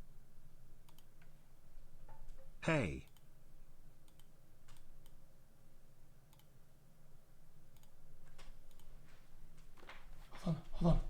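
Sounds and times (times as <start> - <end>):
low room hum: 0.0 - 11.0
sharp computer clicks: 4.0 - 5.2.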